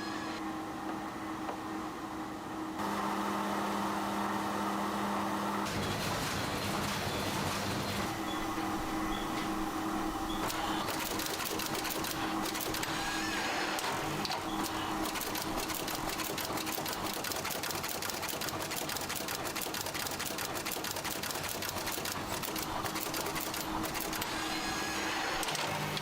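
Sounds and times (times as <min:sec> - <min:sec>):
small machine clattering: 0:10.4 - 0:13.0, 0:13.8 - 0:24.3.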